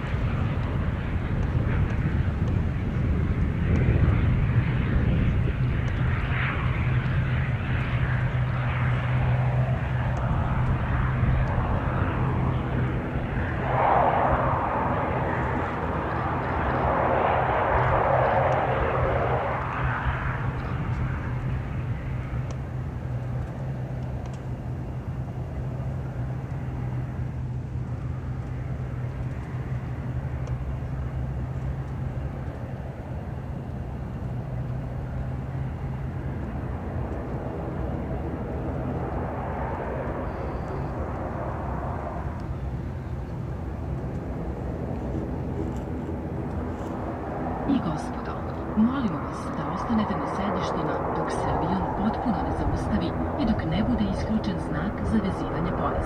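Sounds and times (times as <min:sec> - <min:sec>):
low propeller hum: 0:00.0 - 0:56.0
turboprop engines running: 0:00.0 - 0:56.0
rushing surge: 0:13.5 - 0:15.8.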